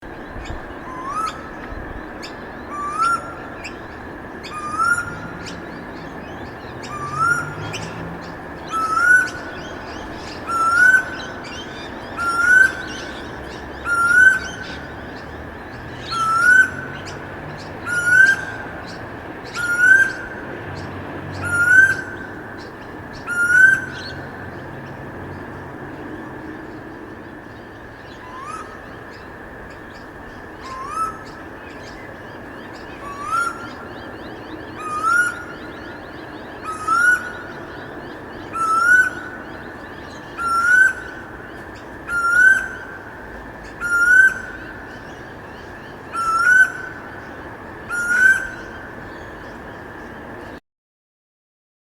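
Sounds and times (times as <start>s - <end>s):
bird whistled call: 0.2s - 5.7s, 6.6s - 8.0s, 8.6s - 15.3s, 15.9s - 17.2s, 17.8s - 18.6s, 19.5s - 20.4s, 21.4s - 22.4s, 23.2s - 24.3s, 28.2s - 28.9s, 30.6s - 32.0s, 32.8s - 41.3s, 42.1s - 43.0s, 43.7s - 44.8s, 46.1s - 47.0s, 47.9s - 48.8s.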